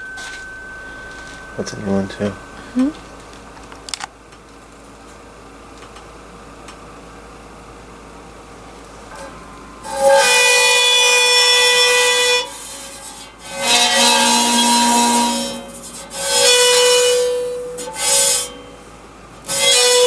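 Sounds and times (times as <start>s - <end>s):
vibrating plate sustained tones: 0.0s - 4.0s, 9.1s - 15.8s.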